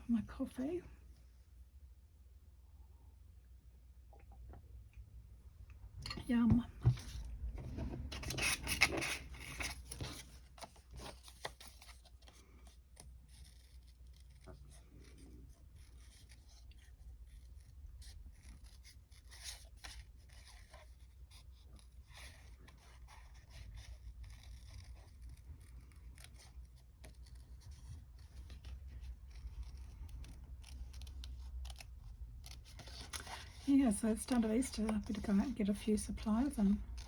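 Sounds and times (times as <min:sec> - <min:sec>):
low steady hum: 0:00.0 - 0:23.2, 0:24.0 - 0:37.0
scissors snipping paper: 0:21.8 - 0:35.6.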